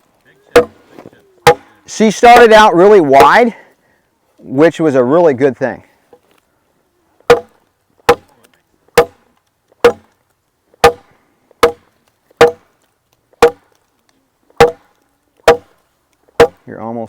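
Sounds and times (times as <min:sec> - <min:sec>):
machete chopping wood: 0:00.6 - 0:00.8, 0:01.4 - 0:01.7, 0:02.3 - 0:03.4, 0:07.3 - 0:08.4, 0:09.0 - 0:09.2, 0:09.8 - 0:10.2, 0:10.8 - 0:12.7, 0:13.4 - 0:13.8, 0:14.6 - 0:15.7, 0:16.4 - 0:16.6.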